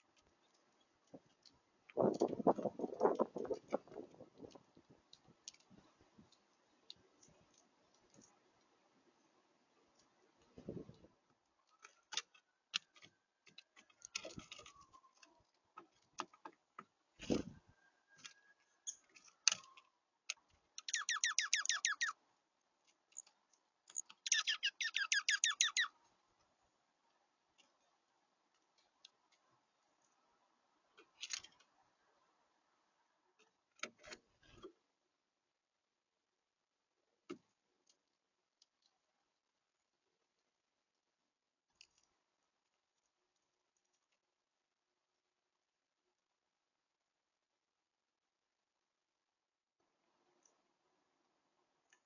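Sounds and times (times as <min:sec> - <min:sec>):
birds pecking at a feeder: 0:00.0 - 0:30.1
small bird trilling: 0:20.8 - 0:22.2, 0:24.3 - 0:25.9.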